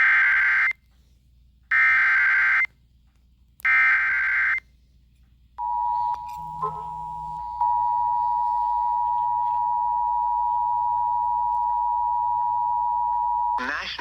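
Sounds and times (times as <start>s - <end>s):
two-tone alert signal: 5.6s - 10.2s.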